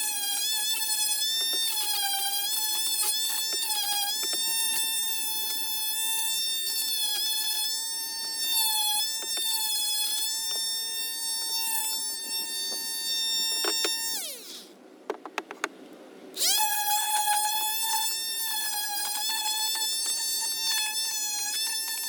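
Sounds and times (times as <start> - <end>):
electric sander whining: 6.7 - 14.7.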